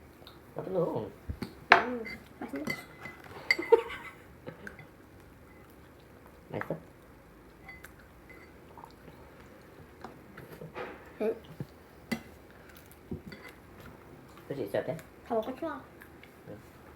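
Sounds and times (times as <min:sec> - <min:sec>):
spoon clinking on dish: 0:01.7 - 0:03.8, 0:07.6 - 0:08.6
quiet chewing: 0:12.4 - 0:16.8.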